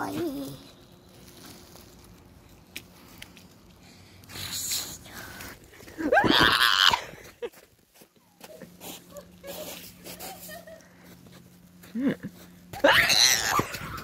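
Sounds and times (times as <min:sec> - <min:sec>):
short rushing hiss: 0:04.3 - 0:05.1.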